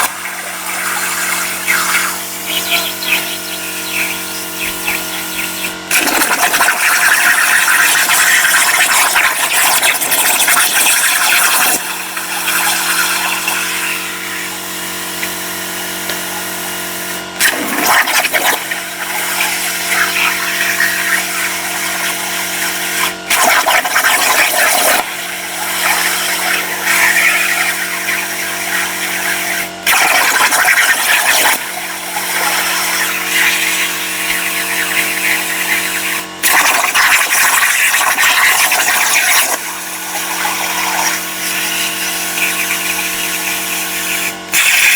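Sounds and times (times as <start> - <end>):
steady machine hum: 0.0 - 44.9
plasma cutter hissing arc: 0.2 - 17.4, 40.2 - 44.9.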